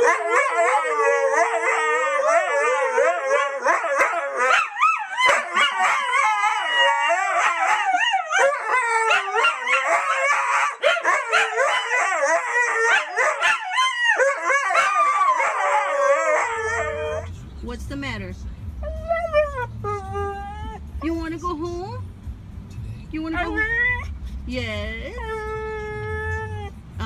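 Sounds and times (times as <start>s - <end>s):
dog howling: 0.0s - 17.3s, 18.8s - 20.9s, 23.4s - 24.1s.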